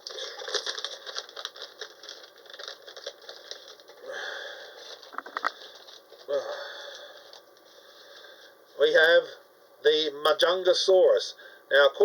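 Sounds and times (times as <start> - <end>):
packaging clicks and rattles: 0.0 - 7.6
packaging rustling: 0.0 - 8.4.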